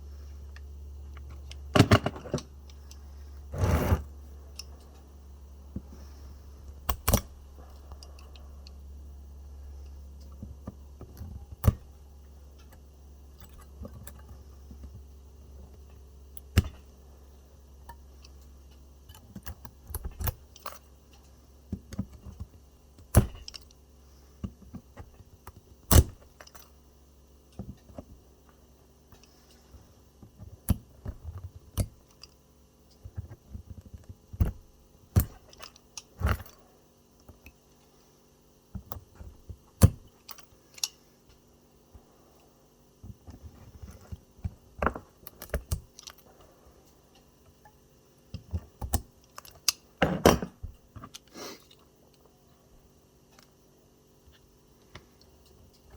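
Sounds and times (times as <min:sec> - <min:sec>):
pliers clicking on metal: 0:06.7 - 0:08.8, 0:25.0 - 0:26.7.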